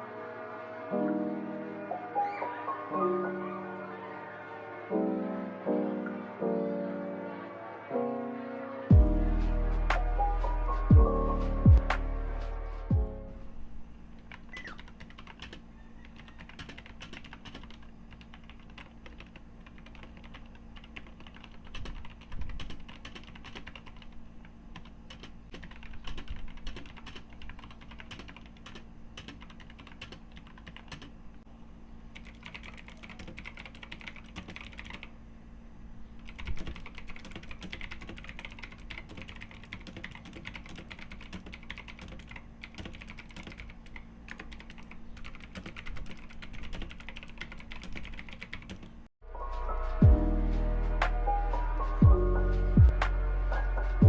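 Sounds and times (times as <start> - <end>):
mechanical keyboard typing: 14.2 - 31.2, 32.2 - 35.1, 36.2 - 48.9.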